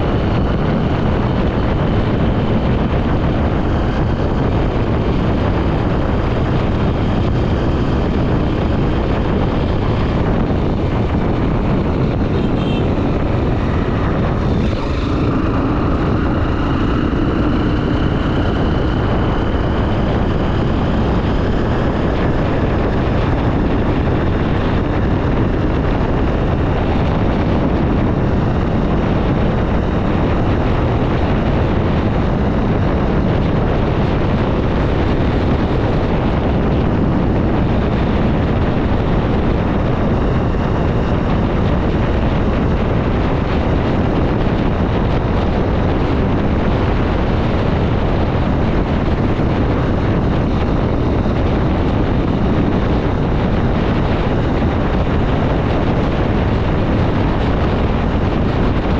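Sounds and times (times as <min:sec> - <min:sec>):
motorcycle engine running: 0:00.0 - 0:58.9
wind rush on microphone: 0:00.0 - 0:58.9.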